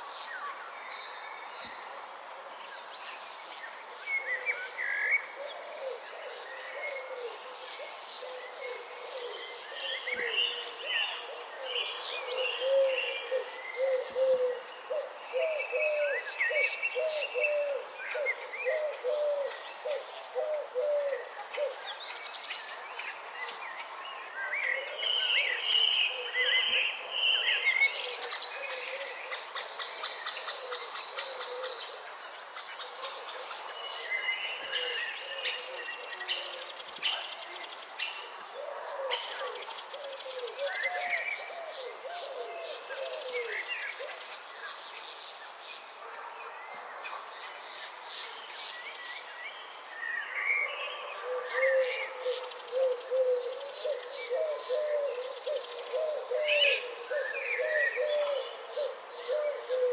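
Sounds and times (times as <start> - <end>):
high insect drone: 0.0 - 59.9
birds chirping and calling: 51.2 - 59.9.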